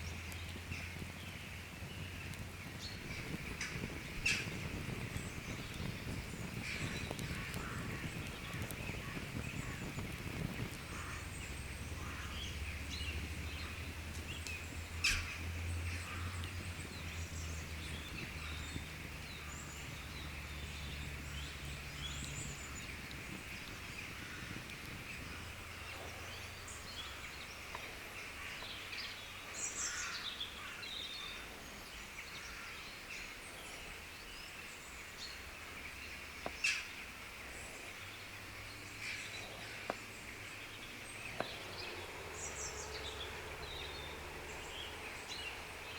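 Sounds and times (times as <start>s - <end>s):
campfire hissing and crackling: 0.0s - 45.9s
small birds chirping: 0.0s - 45.9s
fire popping sharply: 0.1s - 12.0s, 16.4s - 25.9s.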